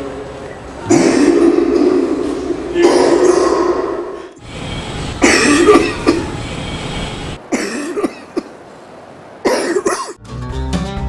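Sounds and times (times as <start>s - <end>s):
person coughing: 0.9s - 3.8s, 5.2s - 6.3s, 7.5s - 8.5s, 9.5s - 10.2s.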